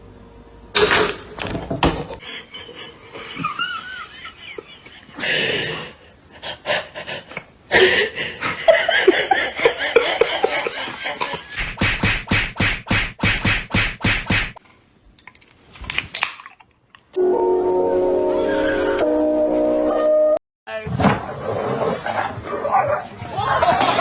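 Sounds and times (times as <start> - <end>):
people laughing: 2.2 - 11.6, 23.2 - 24.0.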